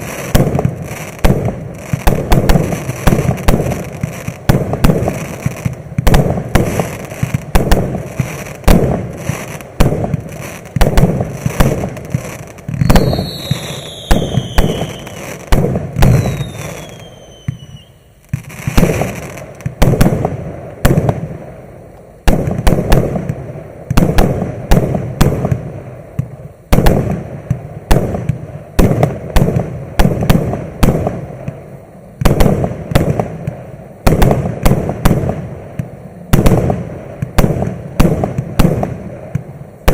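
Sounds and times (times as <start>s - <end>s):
falling firework whistles: 0.0s - 21.2s
fireworks bangs: 0.0s - 21.6s, 22.2s - 39.9s.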